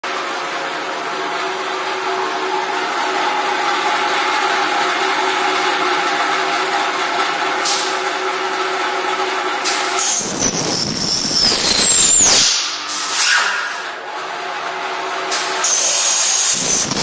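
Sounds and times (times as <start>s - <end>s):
machine humming and whining: 0.0s - 17.0s
rough metal cutting: 1.1s - 14.1s, 15.3s - 17.0s
high squeal falling in pitch: 10.0s - 14.0s.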